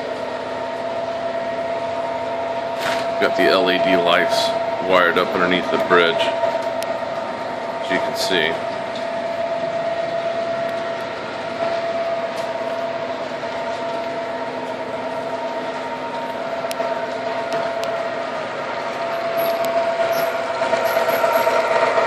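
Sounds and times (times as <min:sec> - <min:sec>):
model train motor whine: 0:00.0 - 0:22.0
wheel rumble: 0:11.5 - 0:22.0.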